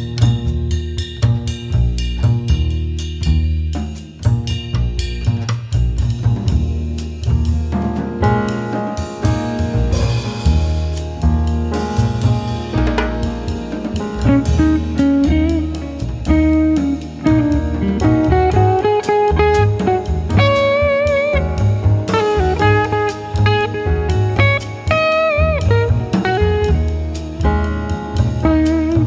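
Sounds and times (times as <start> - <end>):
bass: 0.0 - 29.0
drums: 0.0 - 29.0
electric guitar lead: 14.3 - 27.1.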